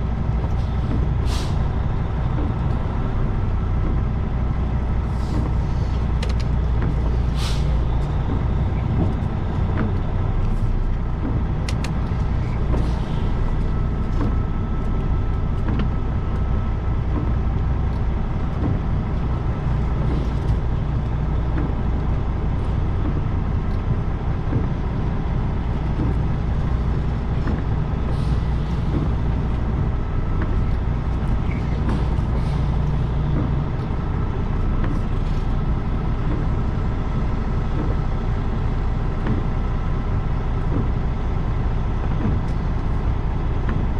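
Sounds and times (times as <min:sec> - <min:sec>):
truck diesel engine running: 0:00.0 - 0:43.9
short air hisses: 0:01.3 - 0:01.6, 0:07.3 - 0:07.8.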